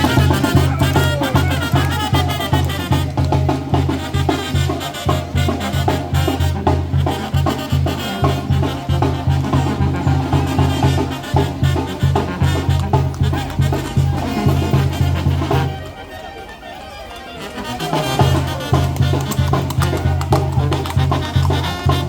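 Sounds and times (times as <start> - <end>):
upbeat latin dance music: 0.0 - 5.3.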